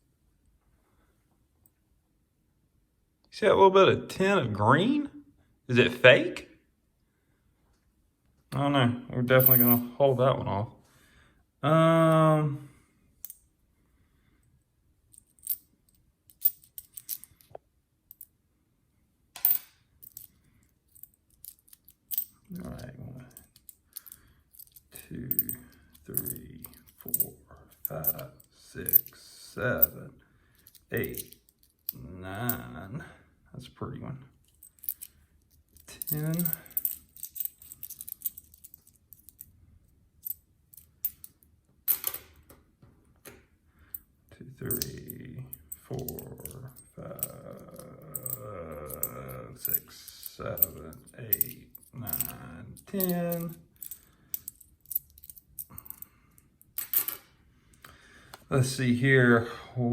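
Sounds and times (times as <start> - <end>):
coins clinking: 9.4 - 9.9, 15.1 - 17.5, 19.4 - 29.2, 30.6 - 32.7, 34.4 - 39.5, 40.2 - 42.4, 44.6 - 57.3.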